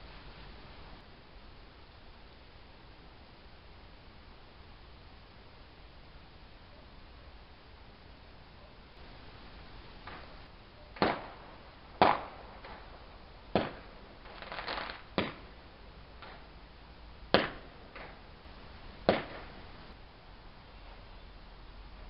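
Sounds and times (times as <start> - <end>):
fireworks crackle: 7.4 - 20.0
distant fireworks bangs: 9.0 - 16.6, 17.3 - 20.0.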